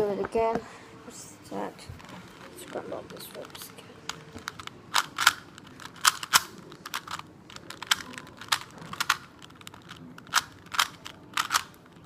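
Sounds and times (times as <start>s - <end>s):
puzzle cube plastic clicks: 2.0s - 12.0s.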